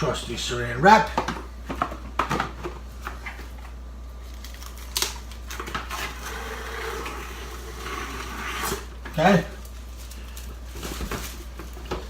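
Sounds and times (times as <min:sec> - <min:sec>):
cling wrap crinkling: 0:03.4 - 0:06.3, 0:08.7 - 0:12.0.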